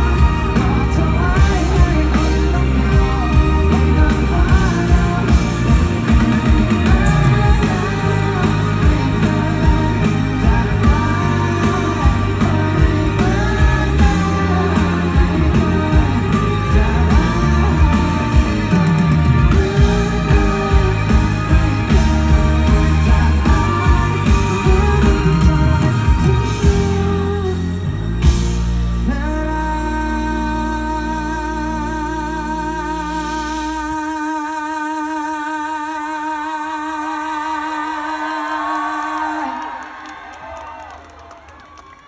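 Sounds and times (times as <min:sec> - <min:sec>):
steady drum beat: 0:00.0 - 0:29.0
person singing: 0:00.0 - 0:39.9
live pop-rock band: 0:00.0 - 0:40.6.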